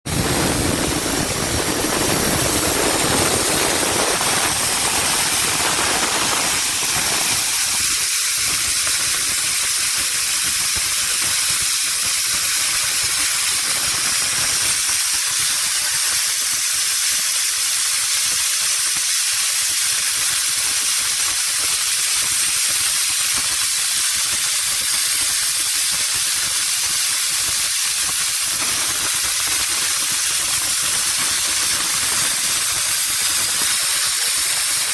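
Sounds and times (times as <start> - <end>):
deep rumble: 0.1 - 5.8
plasma cutter torch hissing: 0.1 - 34.9.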